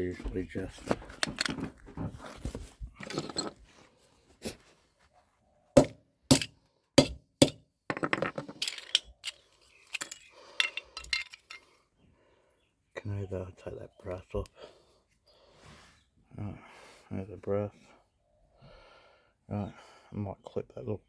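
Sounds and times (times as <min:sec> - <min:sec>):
metal clinking and clattering: 0:03.0 - 0:03.6, 0:07.9 - 0:11.7.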